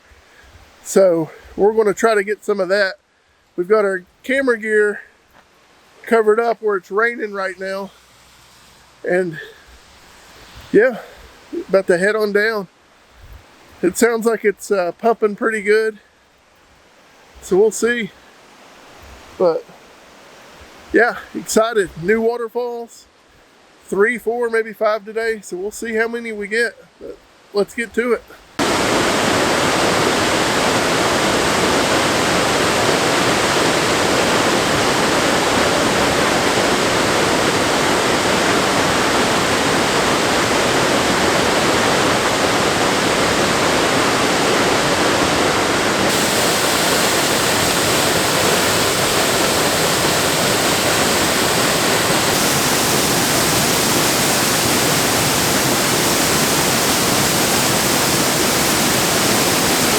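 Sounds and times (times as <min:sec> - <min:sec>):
waterfall rushing: 0:07.1 - 0:12.1, 0:28.0 - 0:59.9.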